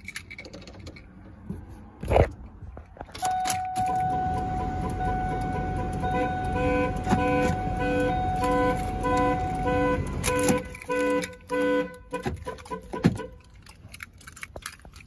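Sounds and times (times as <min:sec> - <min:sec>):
car alarm horn pulsing: 0:03.2 - 0:13.4
steady alarm tone: 0:03.3 - 0:11.1.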